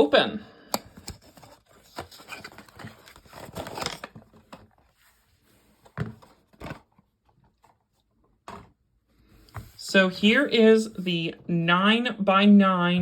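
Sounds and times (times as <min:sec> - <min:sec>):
packaging rustling and scraping: 0:00.8 - 0:08.8.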